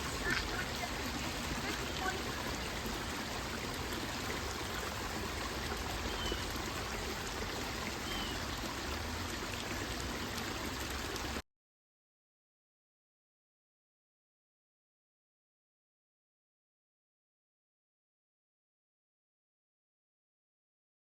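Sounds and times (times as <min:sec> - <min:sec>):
creek water running over rocks: 0:00.0 - 0:11.4.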